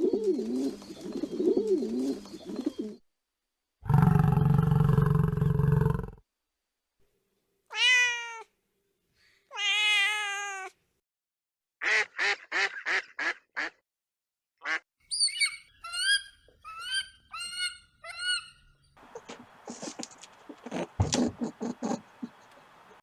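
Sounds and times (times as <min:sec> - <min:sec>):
cat meowing: 0:07.7 - 0:08.5, 0:09.5 - 0:10.8.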